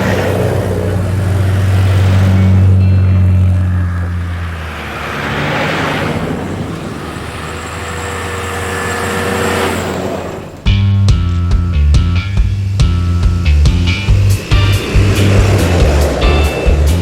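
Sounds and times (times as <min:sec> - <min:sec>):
vehicle engine and road noise: 0:00.0 - 0:17.0
music: 0:02.4 - 0:03.8, 0:10.7 - 0:17.0.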